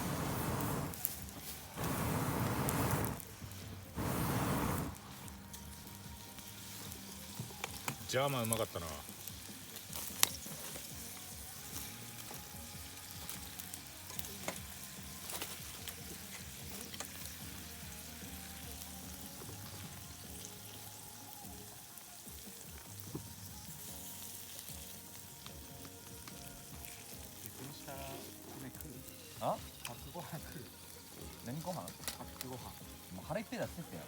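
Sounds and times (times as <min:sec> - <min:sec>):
food sizzling: 0:00.0 - 0:34.0
small pops and crackles: 0:06.8 - 0:10.9, 0:31.0 - 0:33.0.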